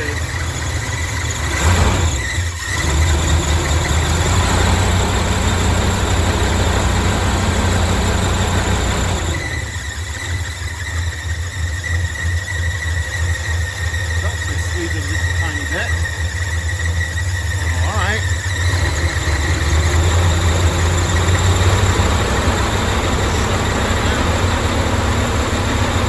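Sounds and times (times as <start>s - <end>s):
high-pitched squeal: 0.0s - 26.0s
pickup engine idling: 0.0s - 26.0s.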